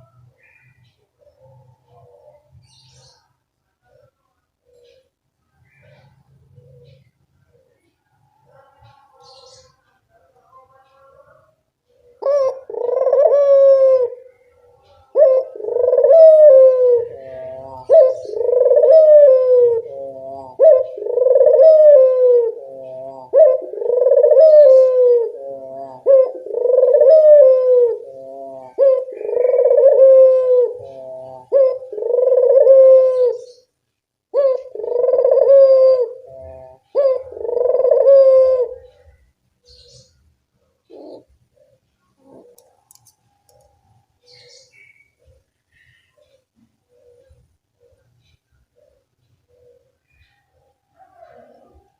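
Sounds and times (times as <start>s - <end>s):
dove cooing: 0.0s - 51.9s.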